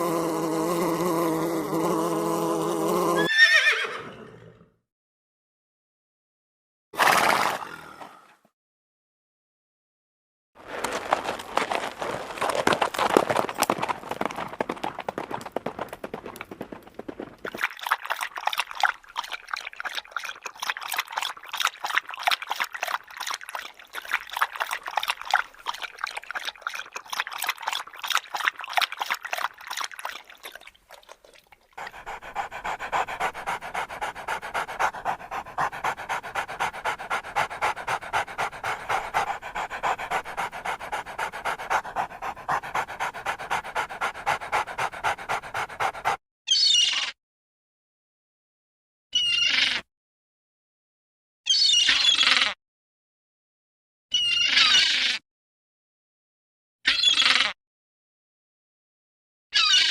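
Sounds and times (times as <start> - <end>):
dog panting: 20.1 - 46.2.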